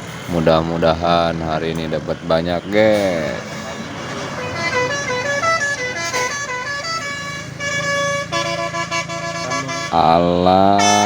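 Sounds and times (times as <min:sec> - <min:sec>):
bus musical horn tune: 0:02.7 - 0:11.0.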